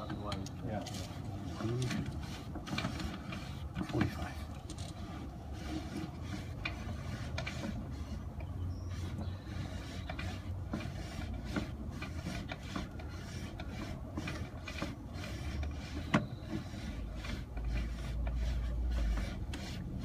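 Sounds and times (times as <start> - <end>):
cable rubbing and ticking: 0.0 - 20.0.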